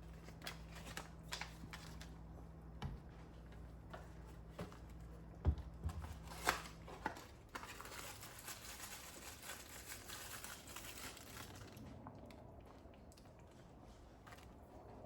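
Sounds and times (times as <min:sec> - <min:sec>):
crinkly rustle: 0:06.2 - 0:15.0.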